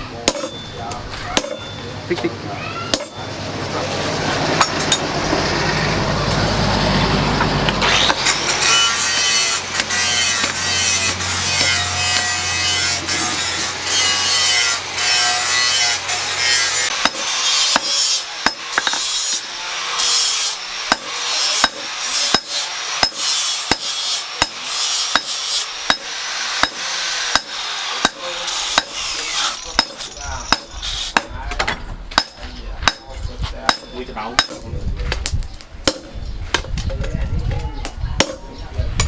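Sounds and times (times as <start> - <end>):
hand tool rasping and scraping: 7.8 - 31.4.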